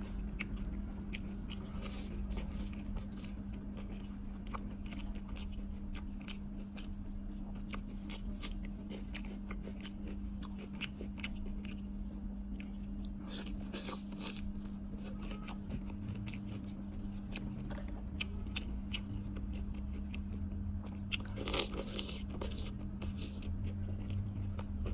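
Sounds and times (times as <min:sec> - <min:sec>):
crunching and chewing seafood: 0:00.0 - 0:24.9
steady low hum: 0:00.0 - 0:24.9.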